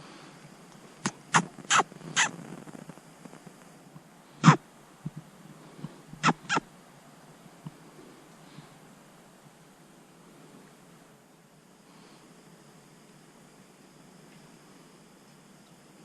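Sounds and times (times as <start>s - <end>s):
sharp barking calls: 1.0s - 2.4s, 6.2s - 6.6s.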